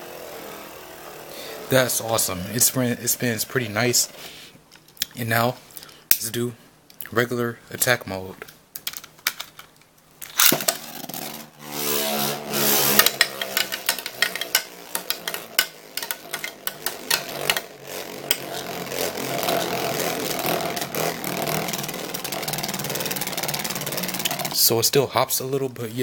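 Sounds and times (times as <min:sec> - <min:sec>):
ripcord launcher whirring: 0:00.0 - 0:04.4, 0:10.2 - 0:24.7
spinning top rattling on plastic: 0:10.3 - 0:24.7.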